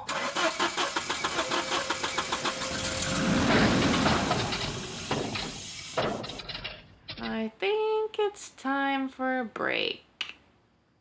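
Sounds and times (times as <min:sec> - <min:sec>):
cartoon rocket engine sputtering: 0:00.5 - 0:05.6.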